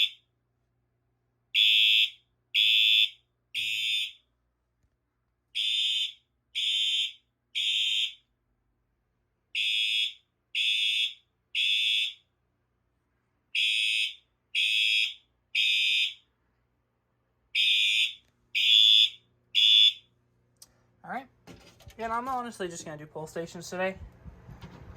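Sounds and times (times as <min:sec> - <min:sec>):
shrill fire alarm horn blasts: 0:01.6 - 0:04.2, 0:05.6 - 0:08.3, 0:09.6 - 0:12.2, 0:13.6 - 0:16.2, 0:17.6 - 0:20.0.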